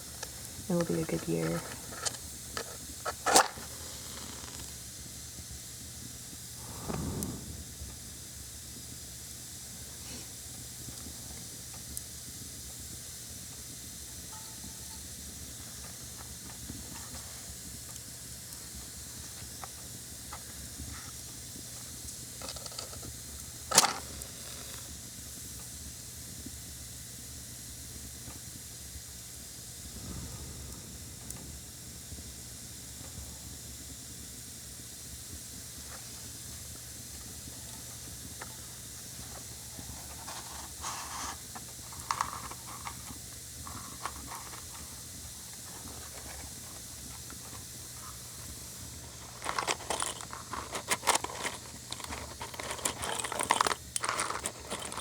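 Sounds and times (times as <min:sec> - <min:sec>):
steady hiss with crackles: 0:00.0 - 0:55.0
blowing out match: 0:01.8 - 0:05.1, 0:06.3 - 0:10.5, 0:29.4 - 0:33.9
match striking scrape: 0:06.6 - 0:07.9.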